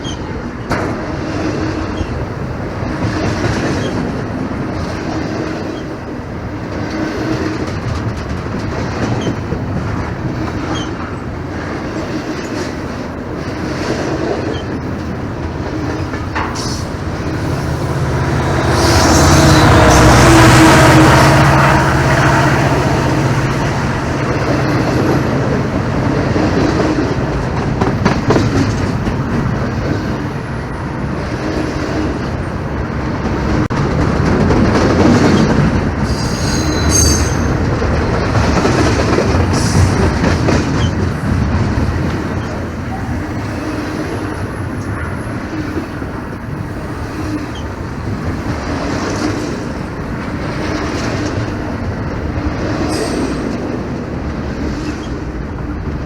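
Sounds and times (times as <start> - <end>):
freight train rumbling past: 0.0 - 56.0
wheels clacking over rails: 0.0 - 56.0
high wheel squeal: 18.5 - 25.0, 36.0 - 37.6.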